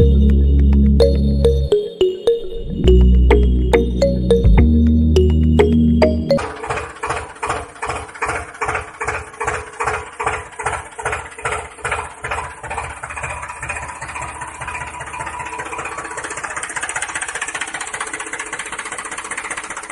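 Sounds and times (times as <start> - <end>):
small engine chugging: 6.4 - 19.9.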